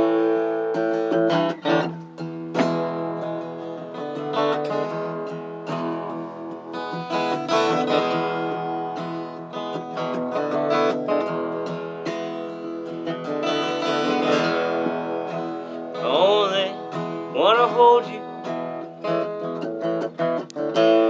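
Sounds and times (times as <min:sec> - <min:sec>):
guitar strumming: 0:00.0 - 0:21.0.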